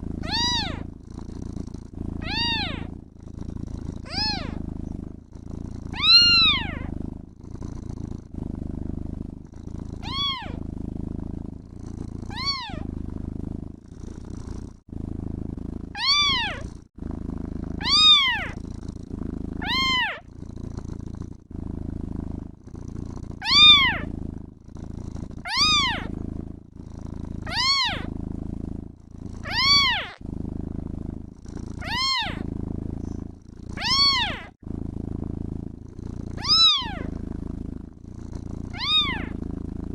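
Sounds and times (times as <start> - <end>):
cat purring: 0.0 - 39.9
kitten meowing: 0.2 - 0.8, 2.2 - 2.9, 4.0 - 4.6, 5.9 - 6.9, 10.0 - 10.6, 12.3 - 12.9, 16.0 - 16.6, 17.8 - 18.6, 19.6 - 20.2, 23.4 - 24.1, 25.4 - 26.1, 27.5 - 28.1, 29.4 - 30.2, 31.8 - 32.4, 33.8 - 34.5, 36.4 - 37.1, 38.7 - 39.3.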